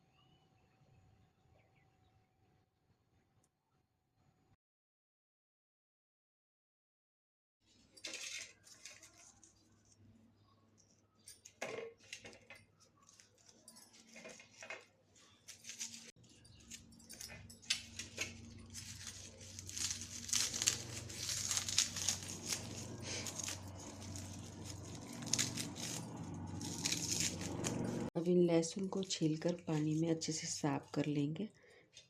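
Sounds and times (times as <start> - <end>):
garlic skins crinkling: 8.0 - 10.1, 11.4 - 28.1, 28.7 - 31.2.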